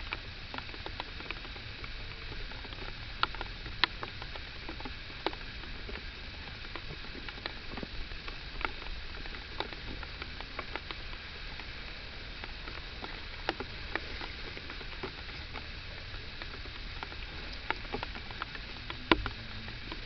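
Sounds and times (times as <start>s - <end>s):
light rain pattering: 0.0s - 20.0s
raindrops ticking: 0.0s - 20.0s.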